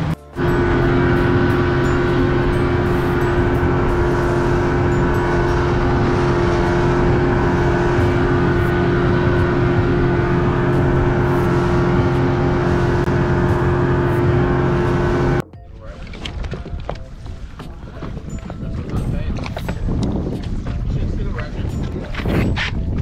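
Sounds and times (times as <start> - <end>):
outboard motor running: 0.0 - 15.5.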